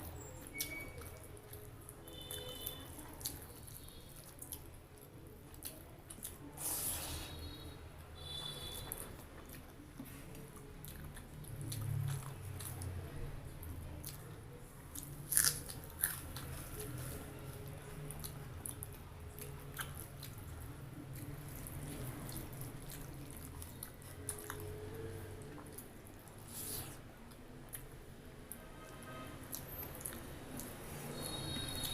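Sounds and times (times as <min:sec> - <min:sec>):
chewing food: 0:00.2 - 0:06.8, 0:08.2 - 0:31.9.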